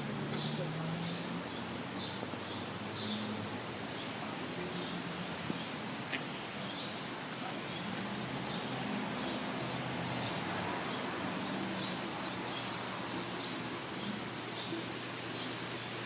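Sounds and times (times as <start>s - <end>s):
heavy rain hissing: 0.0s - 16.0s.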